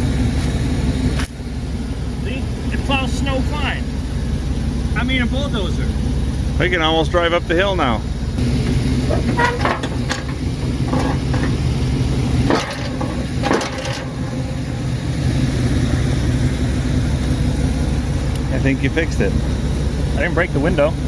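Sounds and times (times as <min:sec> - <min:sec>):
truck engine under load: 0:00.0 - 0:21.0.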